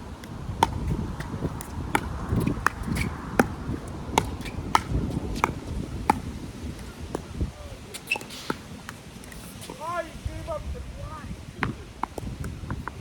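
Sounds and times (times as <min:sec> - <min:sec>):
wind on microphone: 0:00.0 - 0:13.0
paddles hitting plastic ball: 0:00.6 - 0:07.3.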